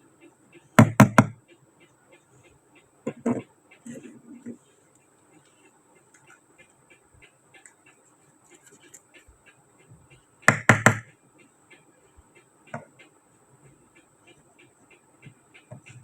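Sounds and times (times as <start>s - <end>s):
sharp knocks: 0.8s - 1.4s, 10.5s - 11.1s.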